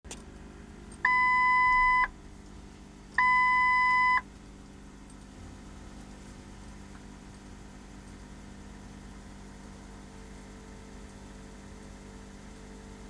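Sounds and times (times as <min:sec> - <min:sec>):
faint steady hum: 0:00.1 - 0:13.0
long electronic beeps: 0:01.1 - 0:02.1, 0:03.2 - 0:04.2.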